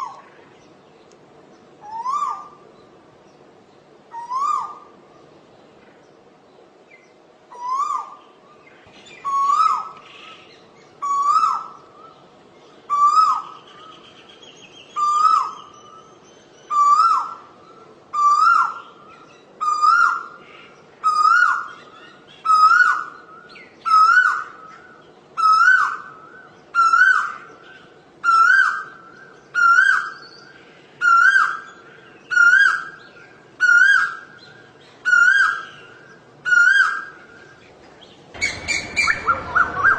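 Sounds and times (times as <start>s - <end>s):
koel calling: 38.4s - 39.9s.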